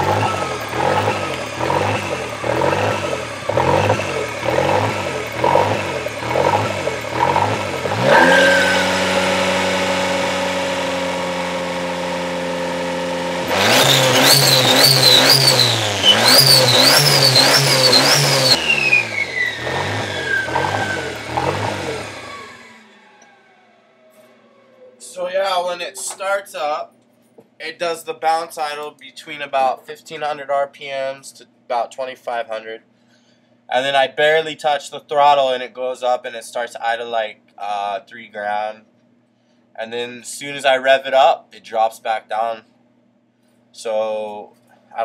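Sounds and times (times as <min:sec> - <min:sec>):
engine with surging rough idle: 0:00.0 - 0:24.7.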